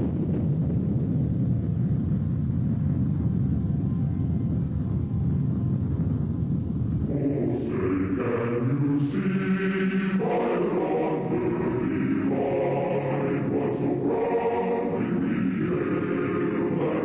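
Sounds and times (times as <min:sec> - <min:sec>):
choir singing held chords: 0:07.1 - 0:17.0.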